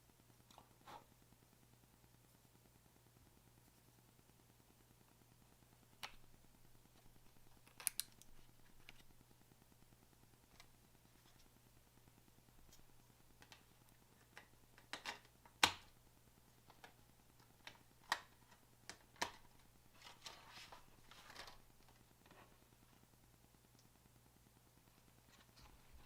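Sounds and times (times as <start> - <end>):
faint steady hum: 0.0 - 26.0
small clicks and taps: 7.5 - 9.1, 13.4 - 15.9.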